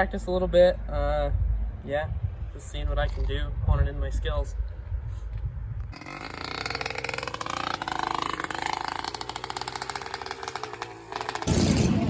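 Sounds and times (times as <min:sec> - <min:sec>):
small engine revving: 0:05.9 - 0:12.0.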